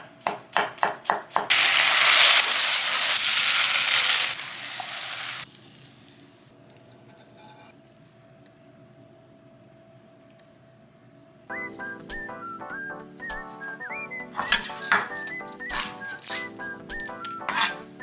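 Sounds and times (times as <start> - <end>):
food sizzling in hot oil: 1.5 - 6.5.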